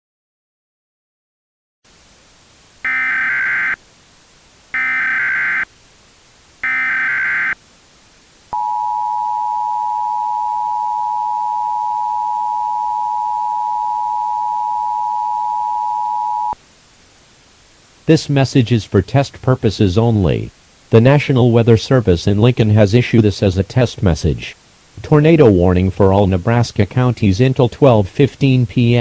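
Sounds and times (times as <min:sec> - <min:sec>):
digital data bursts: 0:02.8 - 0:03.8, 0:04.7 - 0:05.7, 0:06.6 - 0:07.6
two-tone attention signal: 0:02.8 - 0:03.8, 0:04.8 - 0:05.7, 0:06.6 - 0:07.6, 0:08.6 - 0:16.6.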